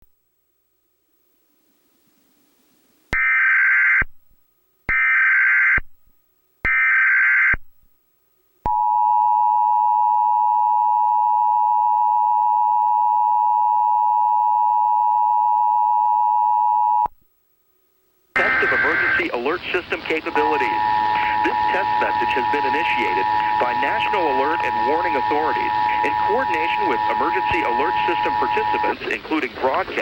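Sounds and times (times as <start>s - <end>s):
two-tone attention signal: 18.4s - 29.2s
digital data bursts: 18.4s - 30.0s.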